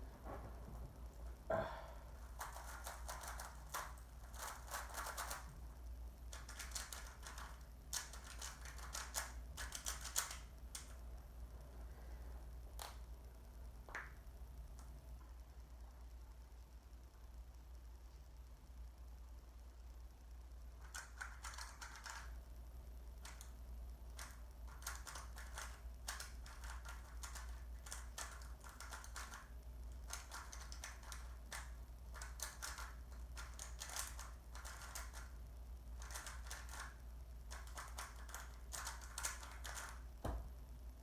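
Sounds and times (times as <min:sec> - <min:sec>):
puzzle cube layers clicking: 0:06.3 - 0:11.0, 0:23.2 - 0:35.4, 0:36.0 - 0:40.0.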